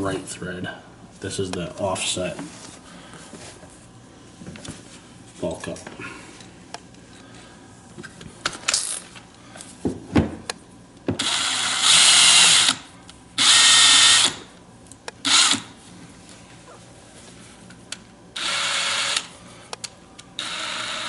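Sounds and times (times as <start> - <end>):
small drill spinning: 11.2 - 12.8, 13.4 - 14.5, 15.2 - 15.7, 18.4 - 19.3, 20.4 - 21.0.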